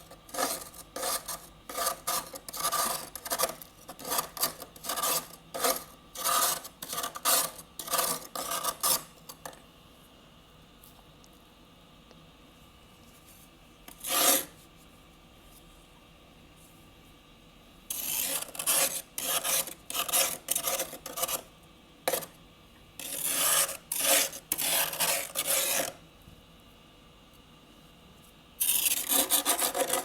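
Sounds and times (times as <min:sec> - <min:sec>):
freezer frost being scraped: 0:00.0 - 0:09.4, 0:13.9 - 0:14.6, 0:17.9 - 0:21.5, 0:22.1 - 0:22.4, 0:23.0 - 0:26.0, 0:28.6 - 0:30.0.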